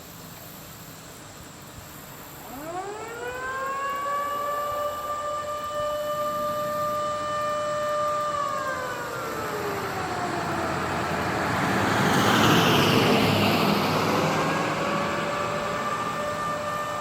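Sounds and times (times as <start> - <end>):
warning siren steady tone: 2.4 - 17.0
passing vehicle rushing: 8.4 - 17.0.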